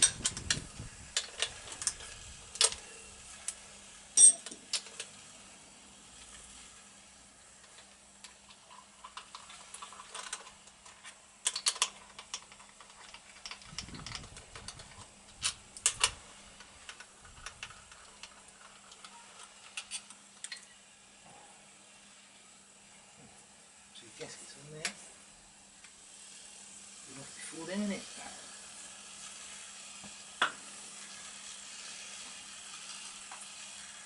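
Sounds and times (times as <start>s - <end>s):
metallic clicks of tools and parts: 4.2s - 5.1s, 11.4s - 14.8s.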